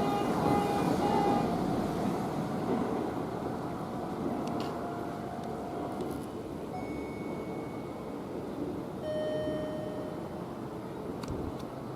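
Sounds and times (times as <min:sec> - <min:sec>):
train running: 0:00.0 - 0:11.9
level crossing alarm beeps: 0:06.8 - 0:08.2, 0:09.0 - 0:10.3.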